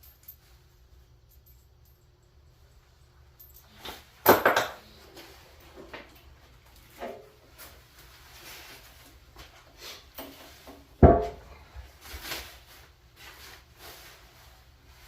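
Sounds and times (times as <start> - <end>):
packaging rustling and scraping: 11.8 - 15.0.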